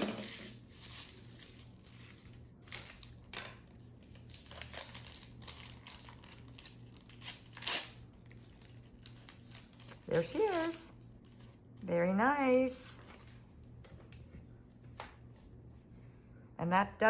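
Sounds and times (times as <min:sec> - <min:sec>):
plastic packaging crinkling: 0:00.0 - 0:11.6.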